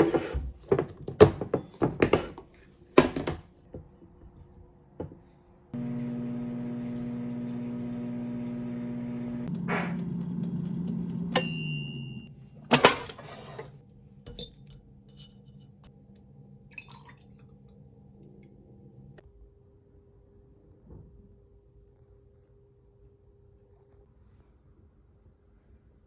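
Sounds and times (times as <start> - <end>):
kitchen appliance humming: 5.8 - 13.8
bell ding: 11.4 - 12.3
dishes clinking: 11.6 - 15.8.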